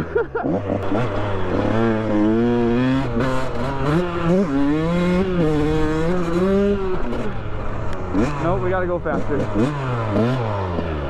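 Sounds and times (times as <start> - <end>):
dirt bike engine revving: 0.0 - 11.0.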